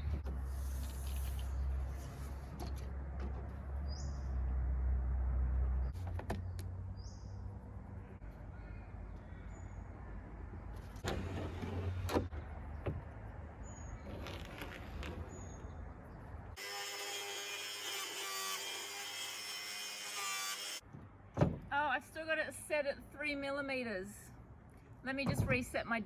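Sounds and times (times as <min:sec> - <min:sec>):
bird chirping: 0:03.8 - 0:04.4.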